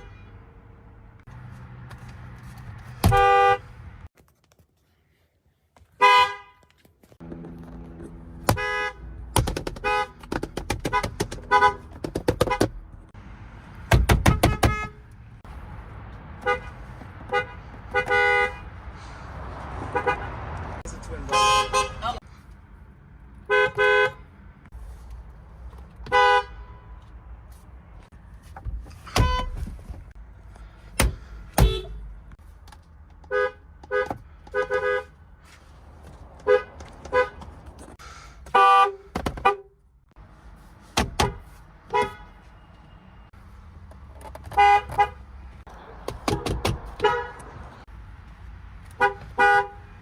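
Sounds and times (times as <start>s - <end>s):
car horn honks: 0.0s - 0.6s, 3.0s - 3.8s, 6.0s - 6.6s, 8.4s - 10.2s, 10.8s - 12.8s, 14.2s - 15.2s, 16.4s - 18.8s, 19.9s - 22.2s, 23.5s - 24.3s, 26.0s - 27.0s, 29.1s - 29.7s, 31.6s - 32.1s, 33.3s - 35.2s, 36.4s - 37.4s, 38.5s - 39.8s, 41.2s - 43.2s, 44.5s - 45.3s, 47.0s - 47.6s, 48.9s - 50.0s.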